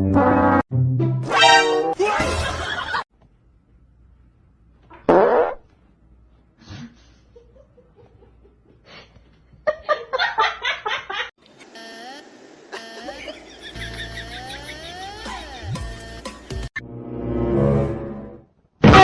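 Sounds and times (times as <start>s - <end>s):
laughter: 2.0s - 3.1s, 6.7s - 11.3s, 12.7s - 15.9s
loud fart-like blast: 5.0s - 5.6s.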